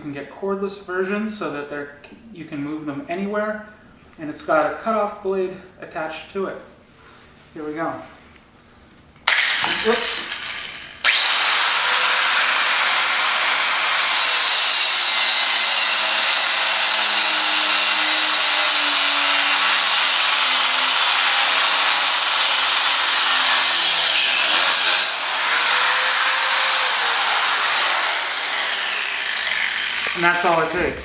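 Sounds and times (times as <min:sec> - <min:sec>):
angle grinder cutting steel: 0:09.3 - 0:30.9.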